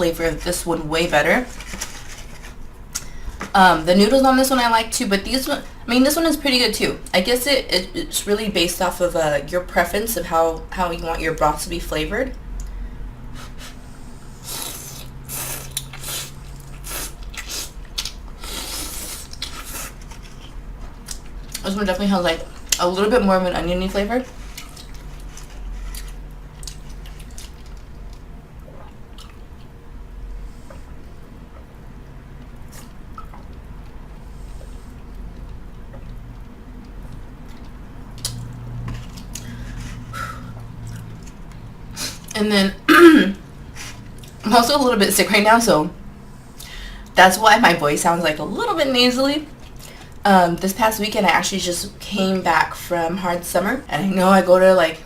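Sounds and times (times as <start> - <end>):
steady low hum: 0.0 - 55.0
person chewing noodles: 13.4 - 21.6, 24.4 - 29.8.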